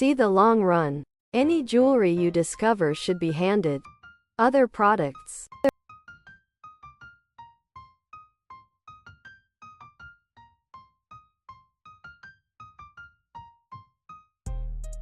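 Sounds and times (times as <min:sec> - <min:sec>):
soft piano melody: 0:05.9 - 0:14.4.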